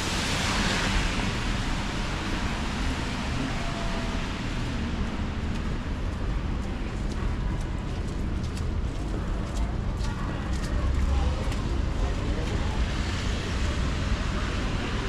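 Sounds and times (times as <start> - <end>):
tyre hiss on wet road: 0.0 - 5.4
low rumble of traffic: 0.0 - 15.0.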